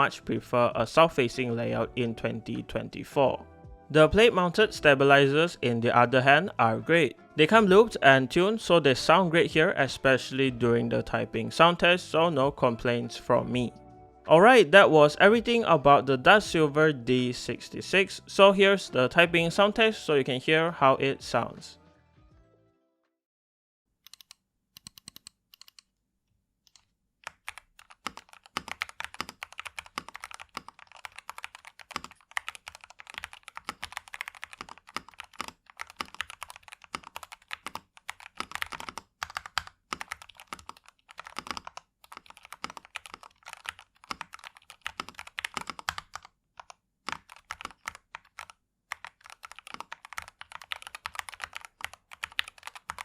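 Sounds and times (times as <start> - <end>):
mechanical keyboard typing: 24.1 - 25.8, 26.7 - 53.0.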